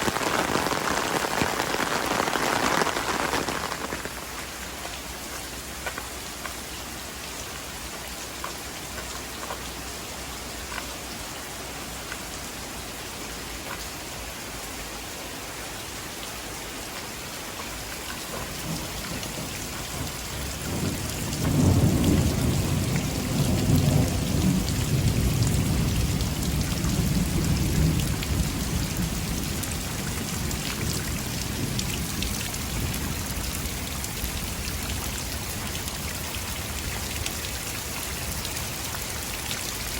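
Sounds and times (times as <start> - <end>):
thunder rumbling: 0.0 - 4.6, 18.3 - 32.2
heavy rain falling: 0.0 - 39.9.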